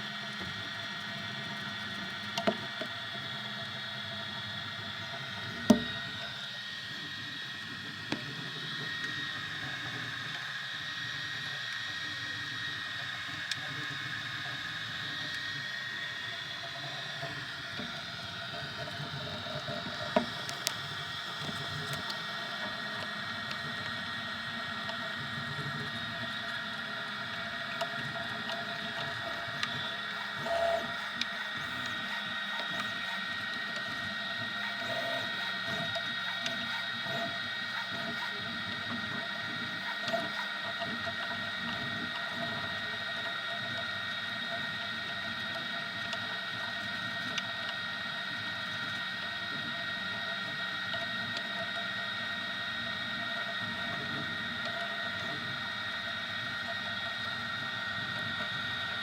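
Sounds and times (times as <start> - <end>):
printer stepper motors whining: 0.0 - 59.0
sharp printer clicks: 27.7 - 41.0.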